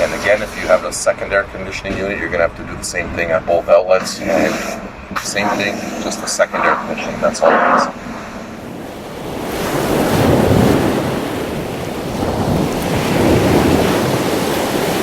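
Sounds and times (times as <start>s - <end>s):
wind buffeting microphone: 6.4s - 15.0s.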